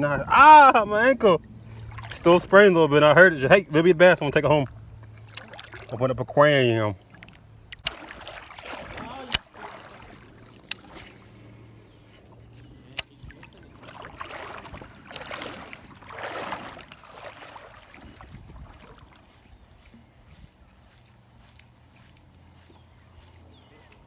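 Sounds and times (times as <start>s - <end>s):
creek water trickling: 0.0s - 24.0s
sharp clicks: 7.2s - 8.0s.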